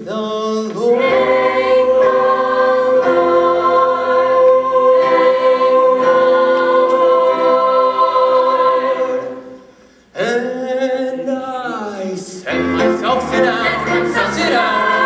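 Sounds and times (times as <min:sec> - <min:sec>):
chorus singing held chord: 0:00.8 - 0:09.7, 0:12.5 - 0:15.0.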